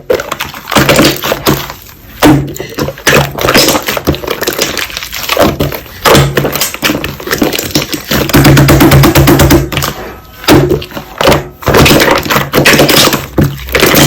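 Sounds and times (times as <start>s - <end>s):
slime crackling and popping: 0.0s - 9.9s
slime squelching: 0.0s - 14.0s.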